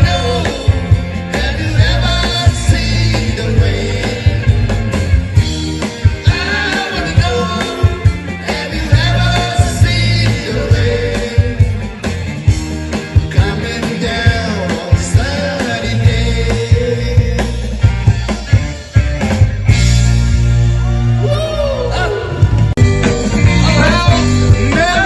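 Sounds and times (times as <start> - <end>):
steady drum beat: 0.0 - 20.9, 22.3 - 25.0
rock band playing: 0.0 - 25.0
person singing: 23.2 - 25.0.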